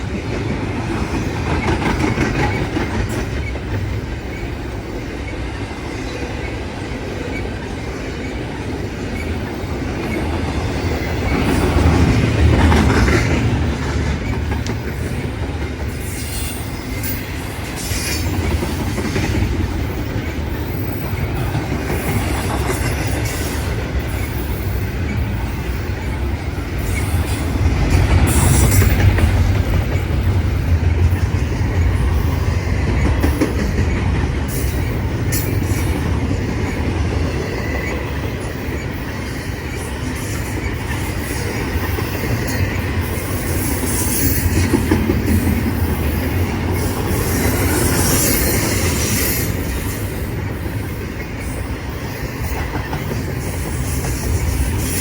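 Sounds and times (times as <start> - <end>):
train wheels rumbling on rail: 0.0 - 55.0
wheels squealing: 45.6 - 55.0.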